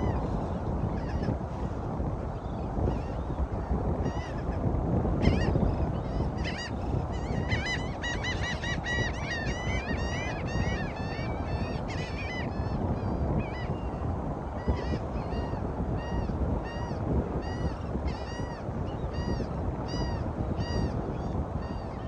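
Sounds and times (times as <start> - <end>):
wind: 0.0 - 22.0
flock of birds calling: 5.2 - 13.9.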